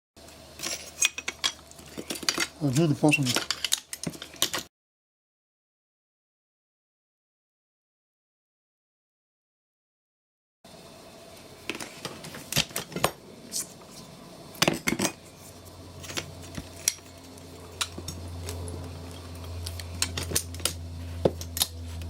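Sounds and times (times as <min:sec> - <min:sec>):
low steady hum: 0:10.7 - 0:22.0.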